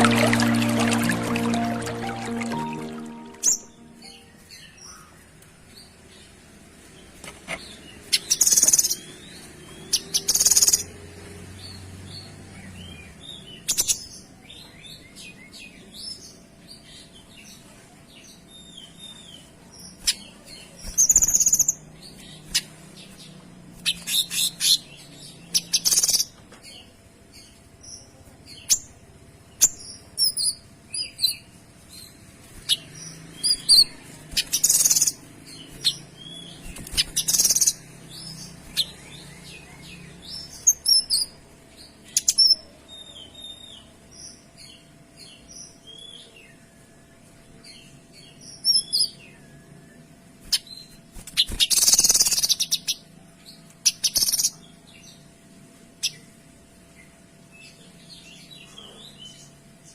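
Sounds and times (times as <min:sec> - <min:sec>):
songbird singing: 0:00.0 - 0:05.2.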